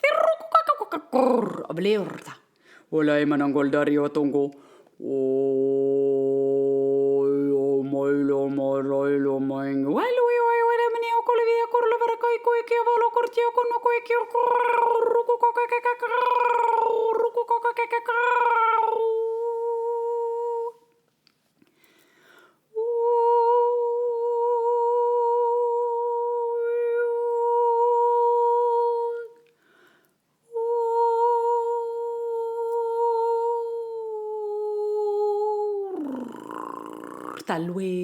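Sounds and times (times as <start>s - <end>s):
woman singing quick syllables: 0.0s - 2.6s, 30.5s - 38.0s
woman breathing in: 2.5s - 2.9s, 21.6s - 22.7s, 29.6s - 30.2s
woman humming long notes: 30.5s - 37.5s.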